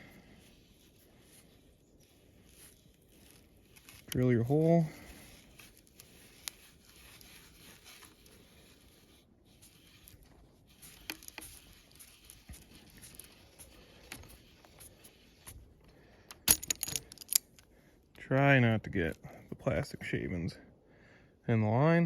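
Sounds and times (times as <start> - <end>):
drill bit scraping plastic tubing: 0.0 - 17.5.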